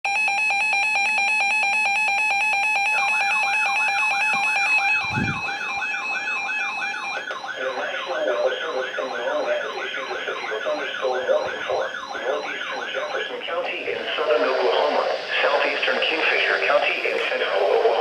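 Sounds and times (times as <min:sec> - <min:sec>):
warbling alert tone: 0:04.4 - 0:13.3
rapid two-pitch electronic beep: 0:04.5 - 0:13.4.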